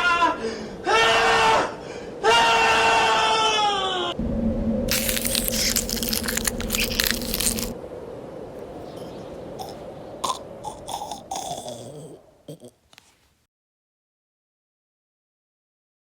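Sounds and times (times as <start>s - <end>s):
loud crackling noise: 4.2s - 11.8s
steady low hum: 4.2s - 12.7s
hiss with clicks and pops: 4.9s - 7.8s.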